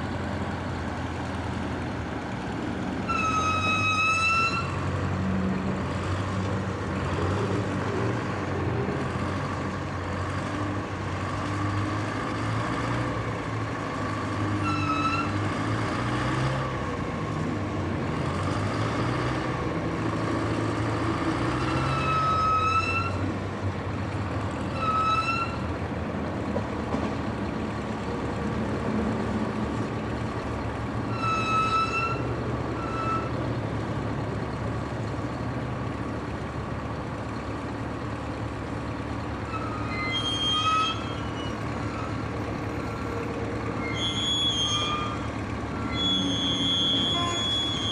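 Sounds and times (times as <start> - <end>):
heavy engine running: 0.0 - 47.9
short high-pitched toots: 43.8 - 47.9.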